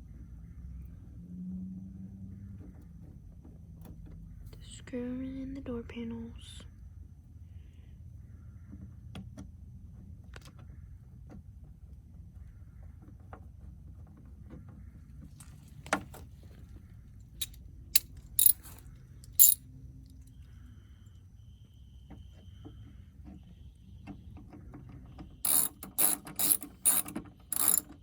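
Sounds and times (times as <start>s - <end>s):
small tools clicking and clinking: 17.4s - 19.6s, 25.5s - 28.0s.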